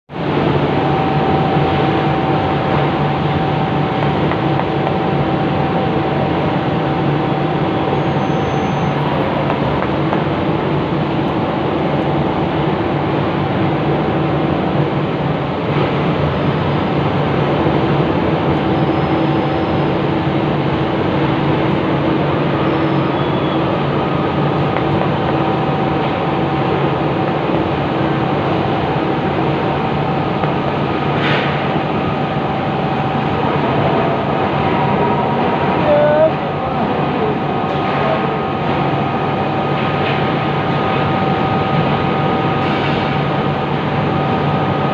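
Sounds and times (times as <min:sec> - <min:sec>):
train rumbling on rails: 0:00.1 - 0:44.9.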